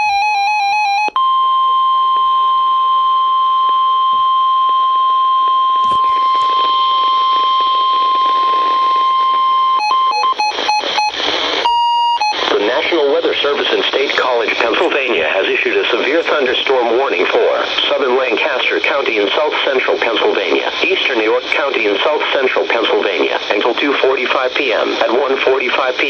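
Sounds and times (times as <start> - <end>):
warbling data tones: 5.7 - 12.7
radio static hiss: 5.8 - 26.0.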